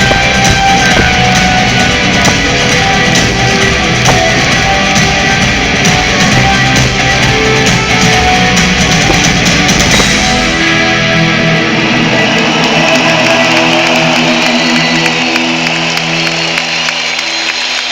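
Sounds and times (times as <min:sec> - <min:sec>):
held guitar chords ringing: 0:00.0 - 0:12.2
rock band playing live: 0:00.0 - 0:12.2.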